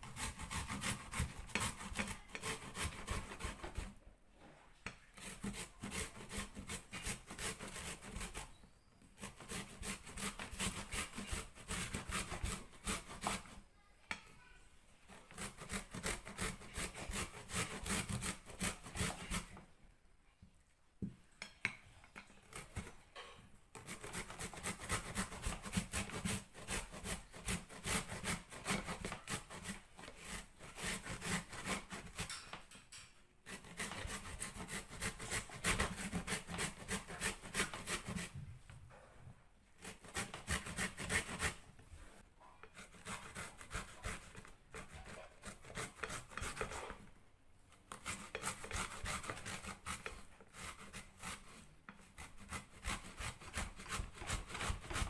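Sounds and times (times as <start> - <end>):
turnip grated on a grater: 0.0 - 3.9, 15.1 - 19.5, 23.8 - 32.4, 33.5 - 38.3, 47.9 - 55.0.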